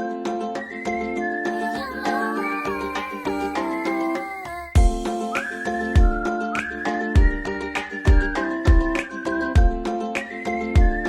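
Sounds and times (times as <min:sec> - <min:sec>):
high sustained melody: 0:01.5 - 0:05.4
steady drum beat: 0:04.2 - 0:06.6, 0:07.2 - 0:09.0, 0:09.6 - 0:09.9.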